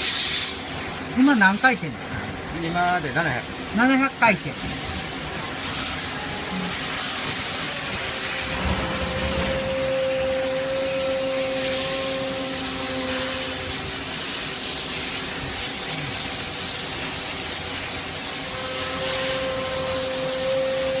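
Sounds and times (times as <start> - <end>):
lathe hum and hiss: 0.0 - 21.0
lathe spindle whine: 4.8 - 21.0.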